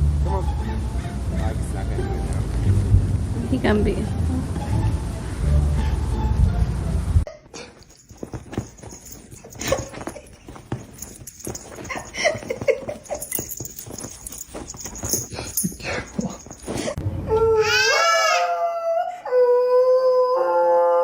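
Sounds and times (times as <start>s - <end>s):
dog whimpering: 15.8s - 20.3s
dog howling: 17.3s - 21.0s.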